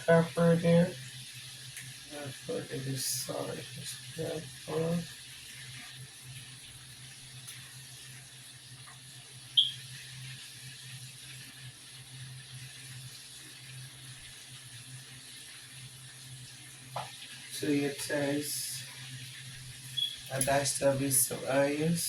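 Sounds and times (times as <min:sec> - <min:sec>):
chicken frying in a skillet: 0:00.0 - 0:22.0
short high squeak: 0:20.0 - 0:20.3.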